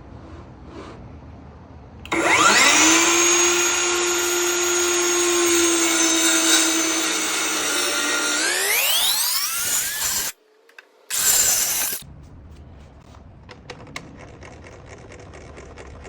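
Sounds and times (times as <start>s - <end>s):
power tool motor whining: 2.1s - 10.4s, 11.1s - 12.0s.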